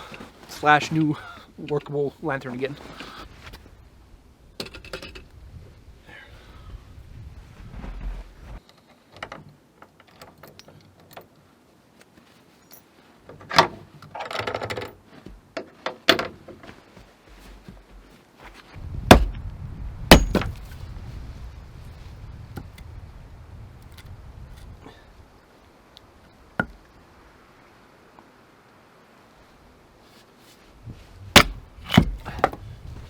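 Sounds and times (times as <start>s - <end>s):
heavy knocks: 19.1s - 19.4s, 20.1s - 20.6s, 31.3s - 32.6s.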